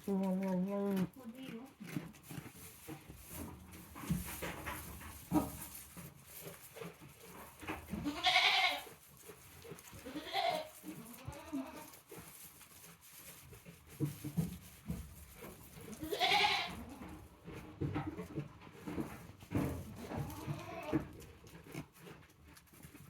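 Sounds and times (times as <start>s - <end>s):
short knocks and rustles: 2.6s - 6.7s
goat bleating: 7.9s - 8.9s, 10.0s - 12.0s, 16.0s - 17.0s, 20.0s - 21.1s.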